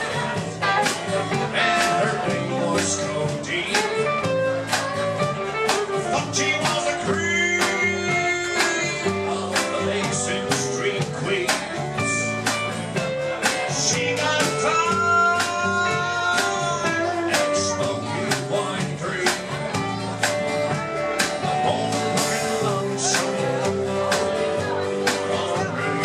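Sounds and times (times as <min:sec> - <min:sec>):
country band playing live: 0:00.0 - 0:26.0.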